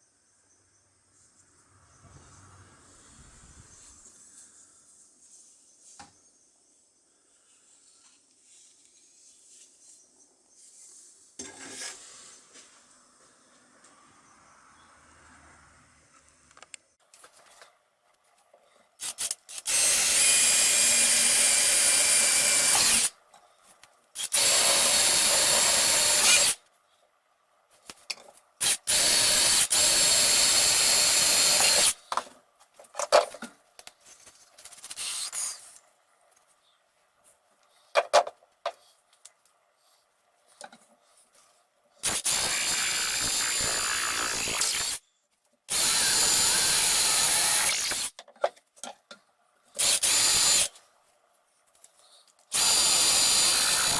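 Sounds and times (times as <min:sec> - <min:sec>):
power tool working wood: 0:24.4 - 0:26.6, 0:42.1 - 0:45.0, 0:52.6 - 0:53.9.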